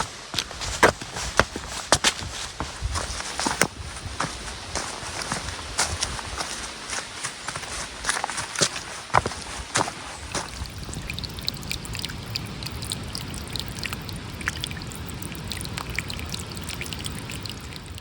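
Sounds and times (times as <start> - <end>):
footsteps: 0.0 - 10.9
water trickling and pouring: 0.6 - 18.0.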